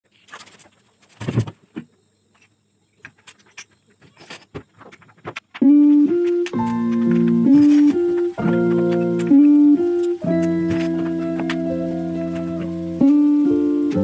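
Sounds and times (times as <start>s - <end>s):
keyboard music with sustained chords: 5.6s - 14.0s.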